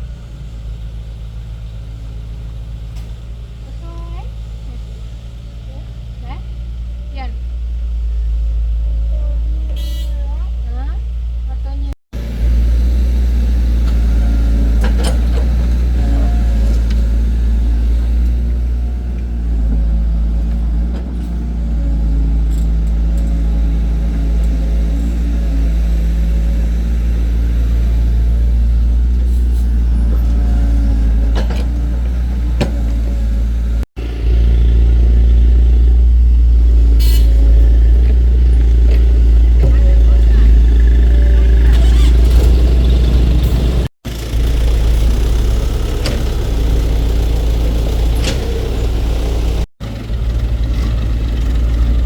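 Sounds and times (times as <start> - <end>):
heavy machine engine running: 10.4 - 52.0.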